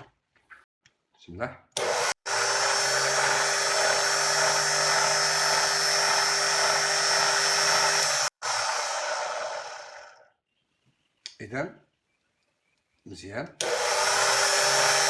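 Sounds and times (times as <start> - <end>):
stand mixer motor whining: 1.8 - 10.2, 13.6 - 15.0.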